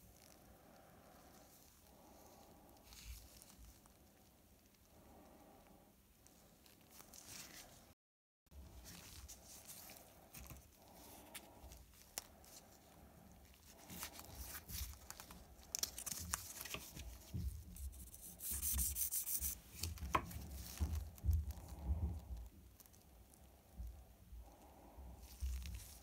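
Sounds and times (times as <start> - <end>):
rubbing strokes on knife: 16.6 - 20.4.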